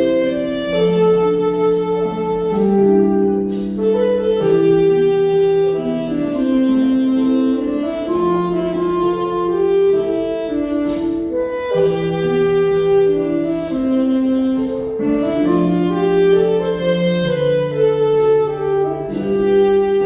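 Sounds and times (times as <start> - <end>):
orchestra playing slow ballad: 0.0 - 20.0.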